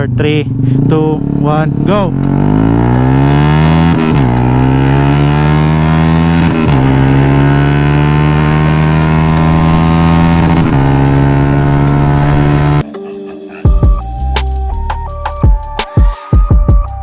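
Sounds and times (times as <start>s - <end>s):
motorcycle engine accelerating: 0.0s - 12.9s.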